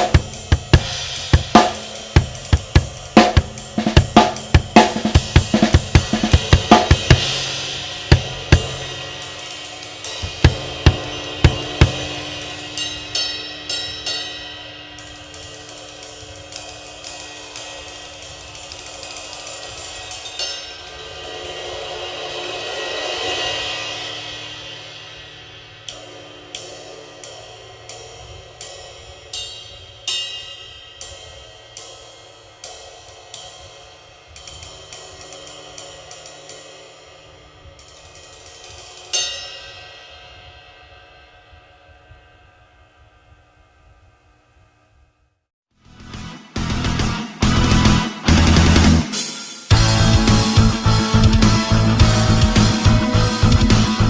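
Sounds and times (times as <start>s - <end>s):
drum kit groove: 0.0s - 30.3s, 45.9s - 54.0s
strokes on ride cymbal: 0.0s - 44.7s, 46.2s - 54.0s
cymbal ringing: 0.0s - 45.1s, 46.8s - 54.0s.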